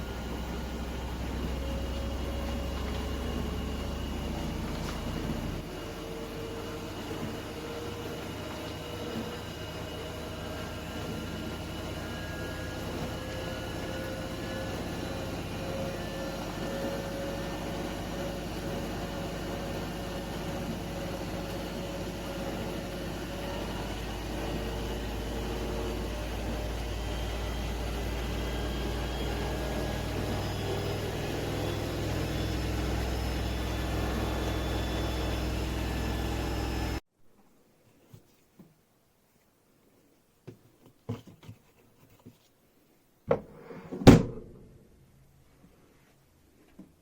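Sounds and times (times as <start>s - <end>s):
dishwasher motor and pump hum: 0.0s - 37.0s.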